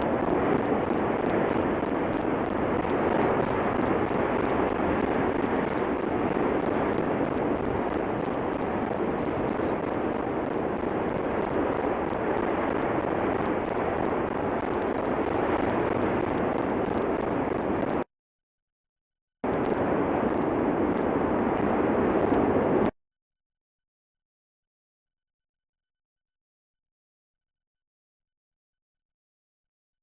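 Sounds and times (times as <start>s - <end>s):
volcano vent roaring: 0.0s - 18.0s, 19.5s - 22.9s.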